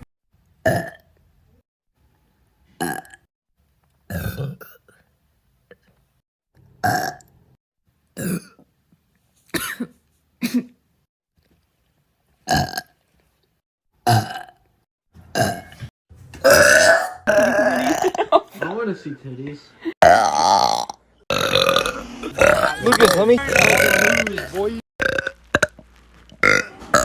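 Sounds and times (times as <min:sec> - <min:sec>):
women belching: 0:16.4 - 0:18.3, 0:20.0 - 0:25.8, 0:26.4 - 0:27.0.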